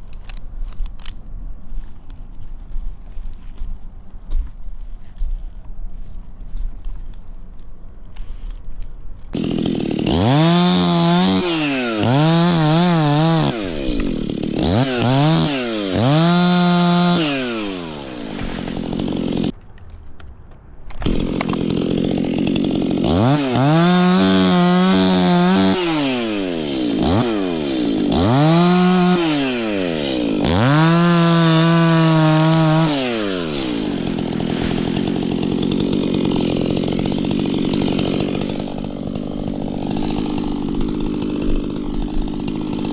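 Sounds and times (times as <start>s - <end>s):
chainsaw revving: 9.3s - 19.6s, 21.0s - 42.9s.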